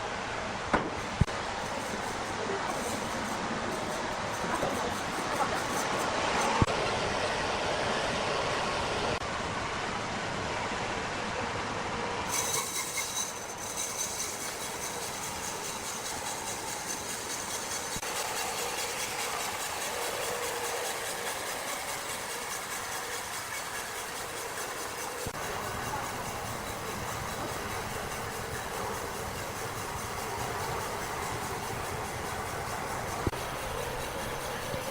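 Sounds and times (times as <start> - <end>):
heavy machinery running: 0.9 - 6.8, 12.3 - 34.9
steady high tones: 12.3 - 34.9.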